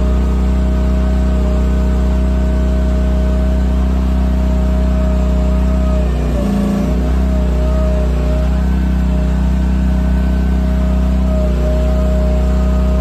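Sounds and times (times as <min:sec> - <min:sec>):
excavator engine running: 0:00.0 - 0:13.0
high whine: 0:11.1 - 0:13.0.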